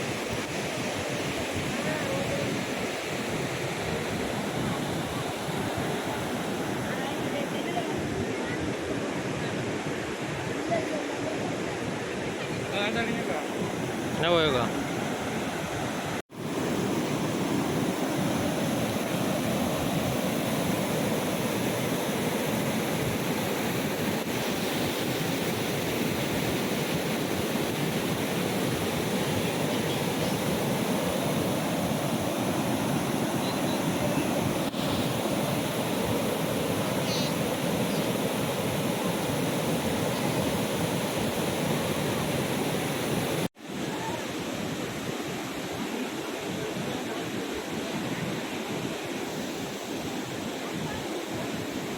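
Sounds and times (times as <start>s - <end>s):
waterfall roaring: 10.1s - 44.7s.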